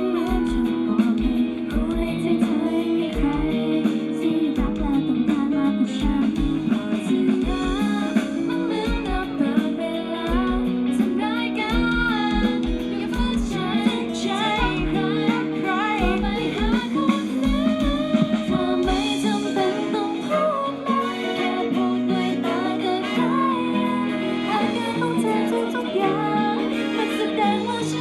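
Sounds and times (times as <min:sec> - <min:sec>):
guitar: 0:00.0 - 0:28.0
lead vocal singing: 0:00.0 - 0:28.0
live pop song: 0:00.0 - 0:28.0
low kick drum beat: 0:00.3 - 0:02.4, 0:03.1 - 0:03.6, 0:04.6 - 0:05.2, 0:06.0 - 0:06.8, 0:07.4 - 0:08.0, 0:08.9 - 0:09.4, 0:10.3 - 0:10.9, 0:11.7 - 0:13.8, 0:16.0 - 0:19.2.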